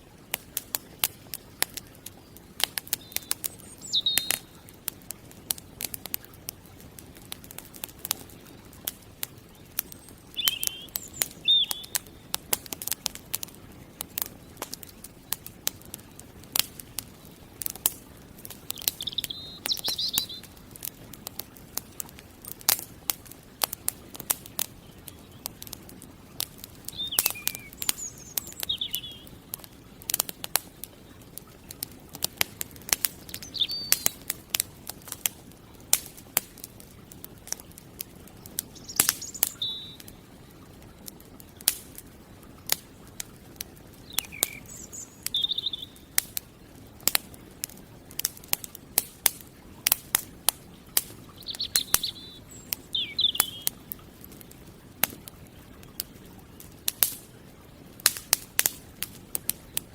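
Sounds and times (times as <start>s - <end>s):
campfire crackling and popping: 0.0s - 59.9s
small birds chirping: 0.4s - 22.8s, 23.6s - 34.6s, 36.8s - 41.8s, 43.8s - 46.2s, 49.8s - 56.2s.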